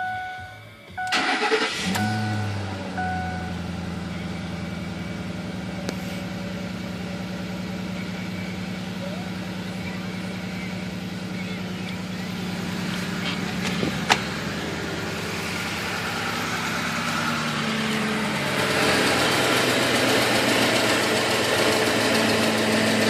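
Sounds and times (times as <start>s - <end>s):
dashboard warning chime: 0.0s - 4.6s
engine idling: 0.0s - 23.0s
engine ticking: 0.0s - 23.0s.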